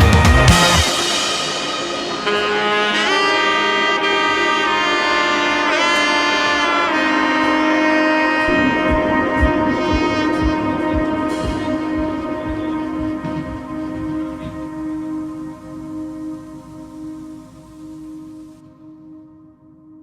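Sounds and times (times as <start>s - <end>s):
heavy drums: 0.0s - 4.1s, 8.5s - 18.1s
held melody notes bending in pitch: 2.2s - 18.5s
steady low beat: 8.4s - 18.6s.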